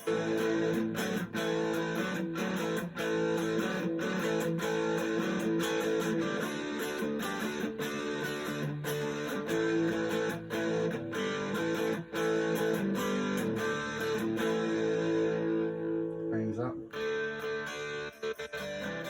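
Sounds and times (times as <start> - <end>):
overdriven electric guitar: 0.0 - 19.0.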